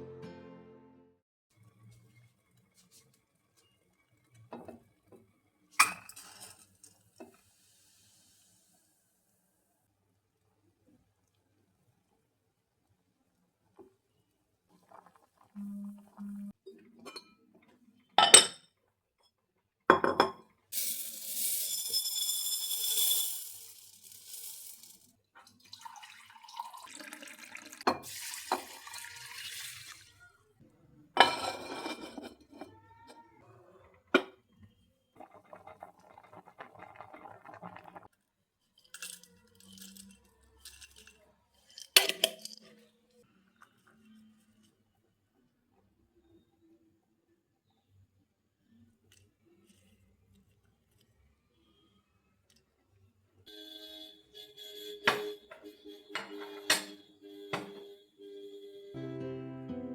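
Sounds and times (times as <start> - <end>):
dishes and glassware knocking: 18.2 - 18.6, 19.9 - 20.5, 31.2 - 32.7, 34.2 - 34.4, 55.1 - 57.8
water running from tap: 24.7 - 30.1.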